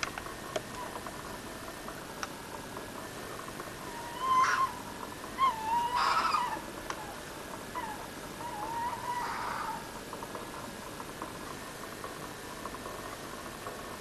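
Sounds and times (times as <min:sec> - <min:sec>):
wavering animal cries: 0:03.8 - 0:10.0.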